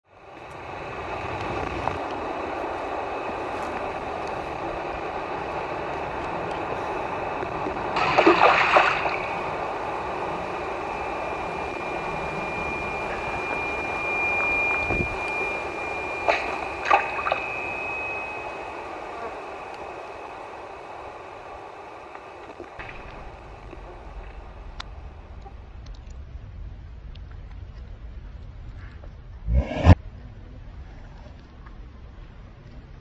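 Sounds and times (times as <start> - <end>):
running water rushing: 0.2 - 25.2
thin high tone: 10.1 - 21.4.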